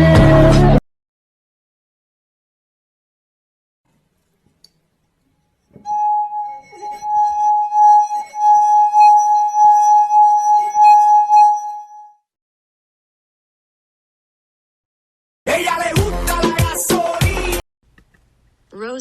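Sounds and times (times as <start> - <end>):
steady high ringing tone: 5.8 - 12.2.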